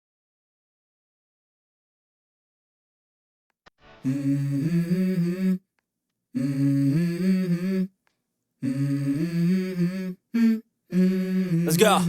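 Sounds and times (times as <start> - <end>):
person humming: 4.0 - 5.6, 6.4 - 7.9, 8.6 - 12.0.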